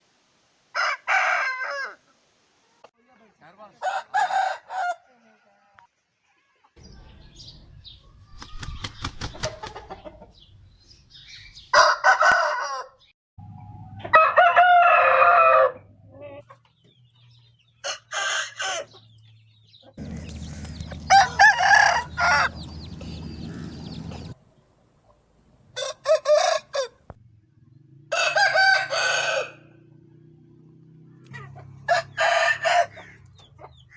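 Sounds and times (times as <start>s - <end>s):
roosters crowing: 0.7s - 2.0s, 3.8s - 5.8s, 11.6s - 13.1s, 13.8s - 16.5s, 17.7s - 19.1s, 20.0s - 24.4s, 25.7s - 33.9s.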